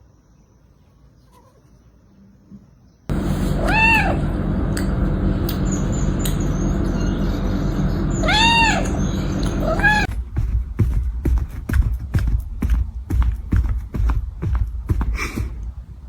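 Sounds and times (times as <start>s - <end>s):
steady low rumble: 3.1s - 16.0s
animal calling: 3.2s - 4.4s, 5.6s - 10.1s
cat meowing: 3.4s - 4.3s, 8.1s - 10.1s.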